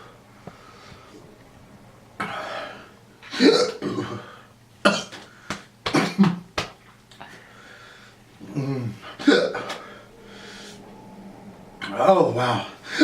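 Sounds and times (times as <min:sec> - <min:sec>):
man burping: 0:03.3 - 0:05.2, 0:08.4 - 0:10.0.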